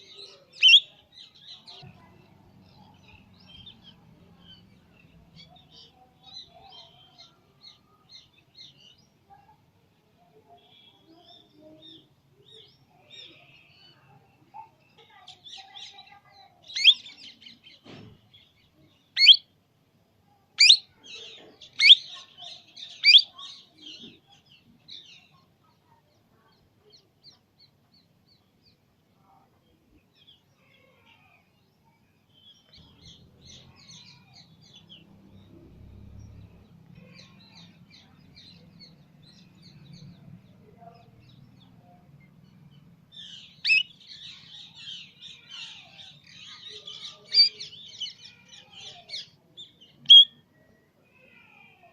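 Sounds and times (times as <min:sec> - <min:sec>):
parrot chirping: 0:00.6 - 0:00.9, 0:20.6 - 0:20.8, 0:21.7 - 0:22.1, 0:43.6 - 0:43.9, 0:50.1 - 0:50.3
loud sharp parrot calls: 0:43.6 - 0:43.9, 0:50.1 - 0:50.4.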